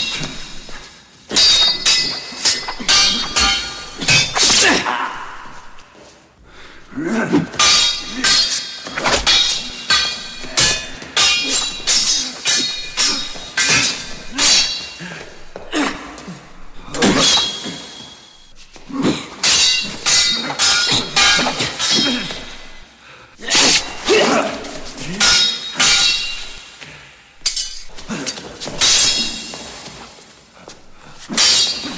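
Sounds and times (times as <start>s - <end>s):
metal blades clashing: 0.0s - 5.9s, 6.7s - 22.8s, 23.4s - 30.0s, 30.7s - 31.9s.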